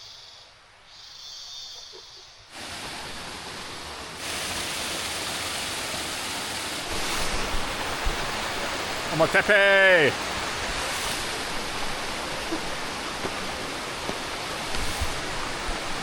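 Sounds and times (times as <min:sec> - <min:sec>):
flowing water rushing: 0:02.5 - 0:16.0.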